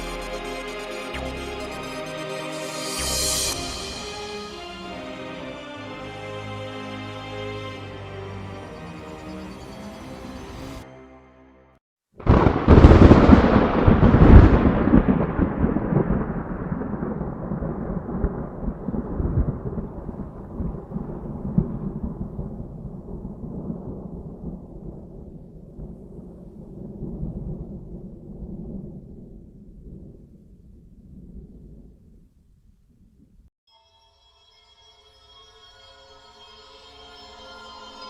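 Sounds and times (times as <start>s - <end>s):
rolling thunder: 12.2s - 33.2s
thunderclap: 12.2s - 33.4s.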